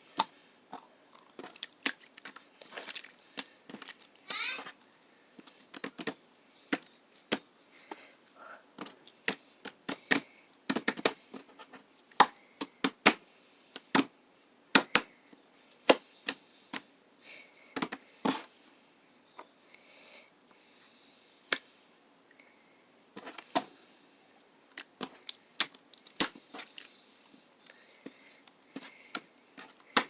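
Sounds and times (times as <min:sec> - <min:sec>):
soft slime squishes: 0:00.2 - 0:08.0.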